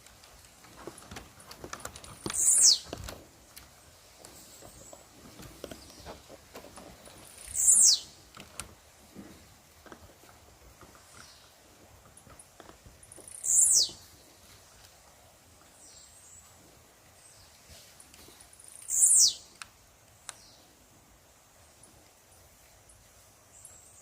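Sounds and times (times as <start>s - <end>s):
faint clicks: 18.1s - 20.5s.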